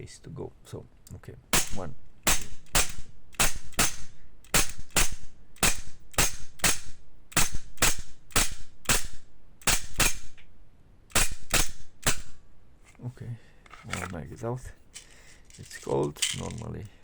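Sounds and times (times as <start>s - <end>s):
airsoft pistol shots: 1.5s - 10.4s, 11.1s - 12.4s.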